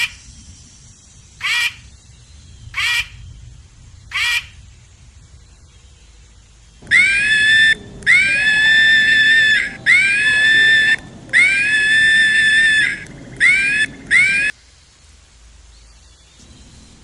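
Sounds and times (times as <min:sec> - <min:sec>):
animal screaming calls: 0:06.8 - 0:14.5.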